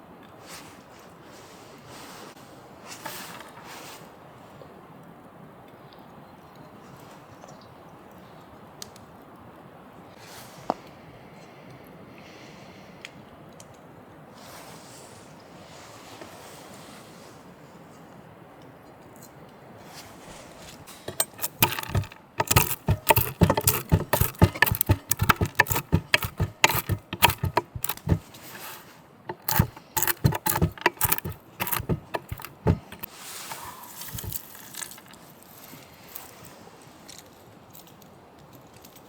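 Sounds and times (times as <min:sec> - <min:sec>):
small hard objects clicking together: 0:21.1 - 0:33.1, 0:34.0 - 0:35.2.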